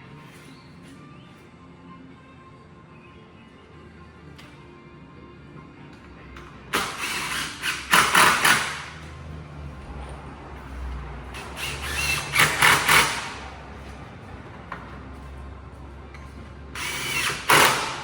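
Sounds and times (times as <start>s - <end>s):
power tool working wood: 11.4s - 13.5s, 16.8s - 18.0s.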